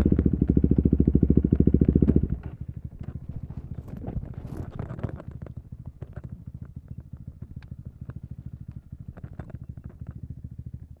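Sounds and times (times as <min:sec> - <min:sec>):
motorcycle engine idling: 0:05.5 - 0:11.0.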